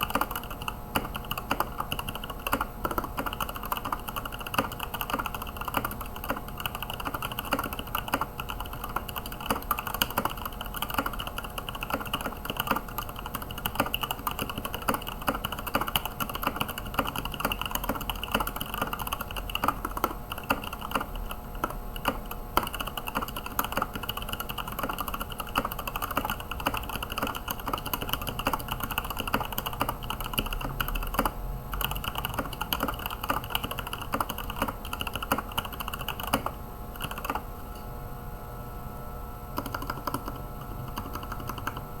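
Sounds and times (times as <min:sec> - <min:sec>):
mechanical keyboard typing: 0:00.0 - 0:37.5, 0:39.6 - 0:41.9.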